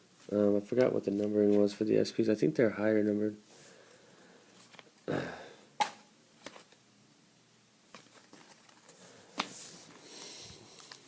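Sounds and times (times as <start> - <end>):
trading cards rustling: 4.5 - 5.1, 7.9 - 11.0.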